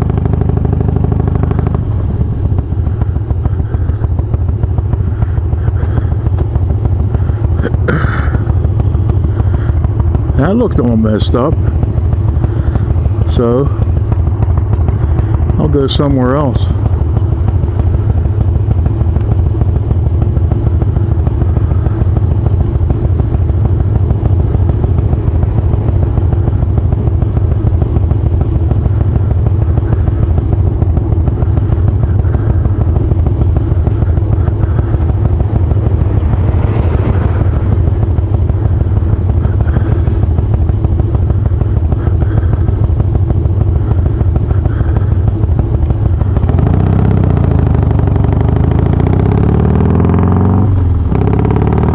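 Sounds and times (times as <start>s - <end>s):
motorcycle engine running steadily: 0.0s - 51.9s.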